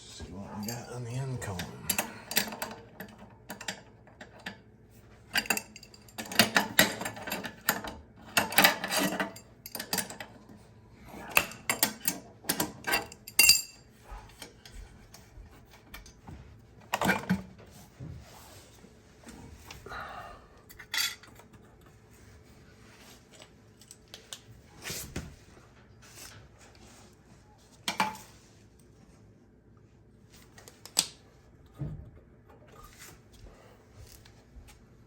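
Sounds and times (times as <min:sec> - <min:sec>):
metal tools clinking: 0:00.5 - 0:02.8, 0:11.3 - 0:13.9.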